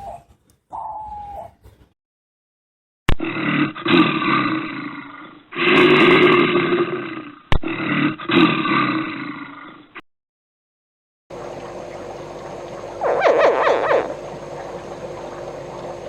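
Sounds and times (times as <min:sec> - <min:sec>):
bear roaring: 0:03.2 - 0:10.0.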